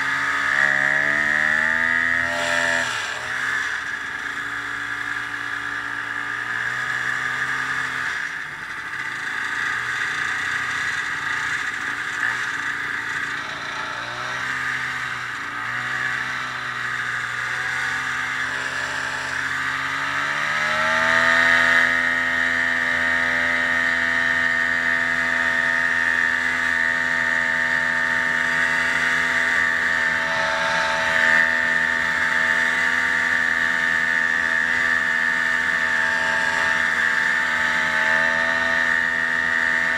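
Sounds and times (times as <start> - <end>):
snowmobile engine running: 0.0 - 39.9.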